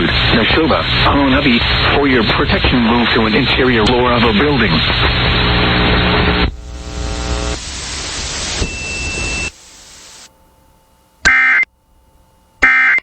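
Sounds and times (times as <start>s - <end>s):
static hiss: 0.0s - 10.4s
warbling digital bursts: 6.7s - 10.3s.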